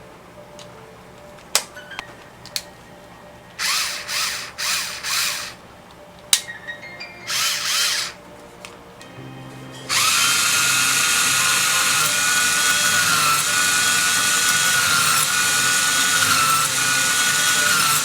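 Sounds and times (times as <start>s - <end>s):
electric drill whirring: 3.6s - 5.6s, 7.3s - 8.2s, 9.9s - 18.0s.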